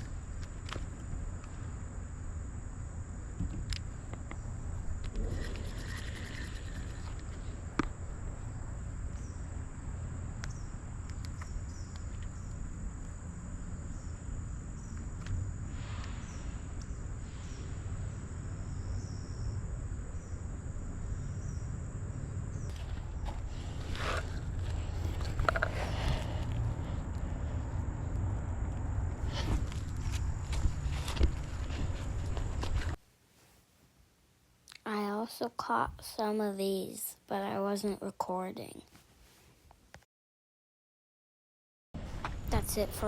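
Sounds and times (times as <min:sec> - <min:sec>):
insects droning: 0:00.0 - 0:33.0.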